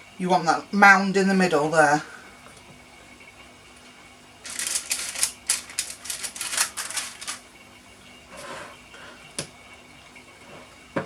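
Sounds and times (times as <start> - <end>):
metal spoons clicking and scraping: 4.5 - 7.4.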